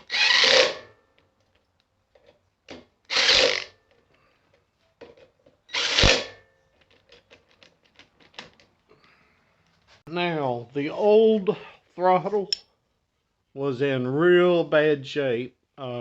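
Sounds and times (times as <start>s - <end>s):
hand tool mechanical bursts: 0.0s - 1.0s, 3.1s - 3.9s, 5.7s - 6.4s.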